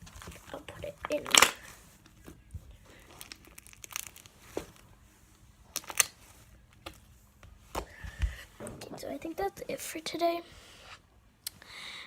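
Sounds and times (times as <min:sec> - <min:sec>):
slime crackling and snapping: 0:01.1 - 0:01.6, 0:03.1 - 0:04.8, 0:05.7 - 0:06.2.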